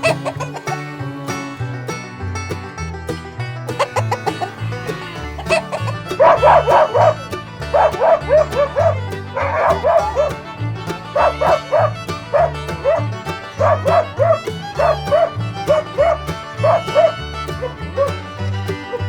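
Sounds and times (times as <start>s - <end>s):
backing track music: 0.0s - 19.0s
dog barking: 6.2s - 7.1s, 7.7s - 10.3s, 11.2s - 13.0s, 13.6s - 15.3s, 16.0s - 17.2s.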